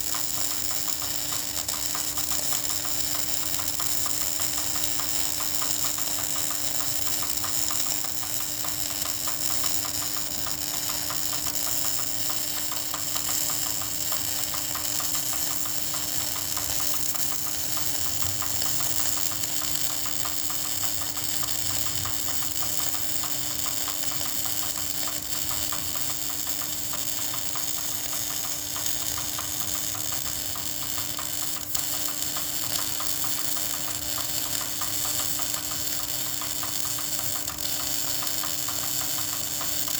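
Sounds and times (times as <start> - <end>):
welding arc crackling: 0.0 - 39.9.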